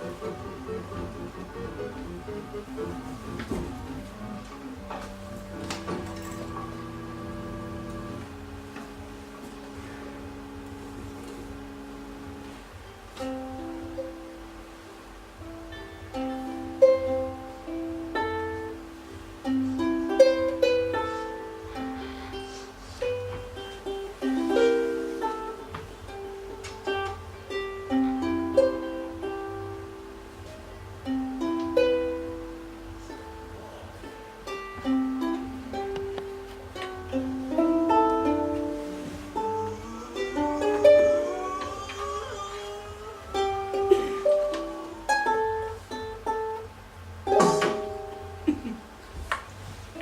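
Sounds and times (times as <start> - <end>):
faint low hum: 0.0 - 50.0
plucked string melody: 0.0 - 50.0.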